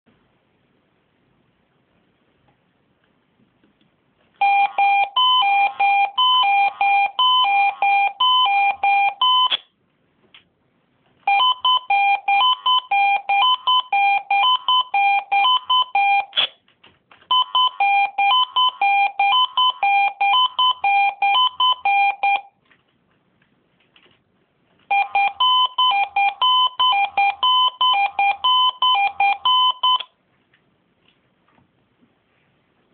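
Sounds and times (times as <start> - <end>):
pager alarm two-pitch beeps: 4.4 - 9.6, 11.3 - 16.4, 17.3 - 22.5, 24.9 - 30.1.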